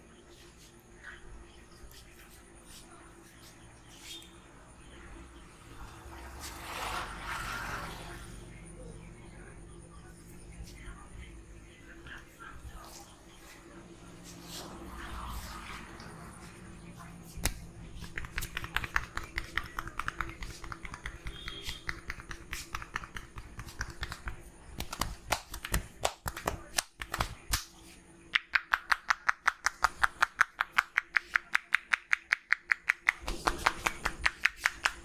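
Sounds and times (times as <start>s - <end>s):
rapid hand slaps on head: 17.4s - 27.7s, 28.3s - 35.0s
sharp hand claps: 17.4s - 27.7s, 28.3s - 35.0s.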